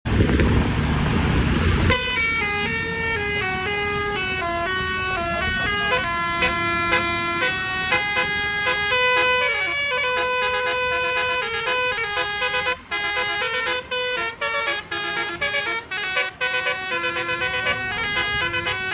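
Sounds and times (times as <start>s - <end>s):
loud rushing noise: 0.1s - 9.4s
multi-tone air horn tune: 1.9s - 18.9s.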